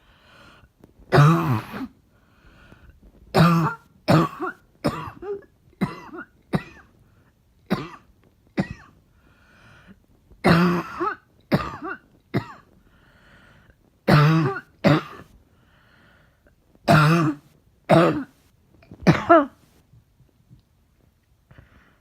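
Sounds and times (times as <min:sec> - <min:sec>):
woman coughing: 0:01.2 - 0:01.9, 0:03.4 - 0:06.9, 0:10.5 - 0:12.6, 0:14.1 - 0:15.2, 0:16.9 - 0:18.3, 0:19.1 - 0:19.6.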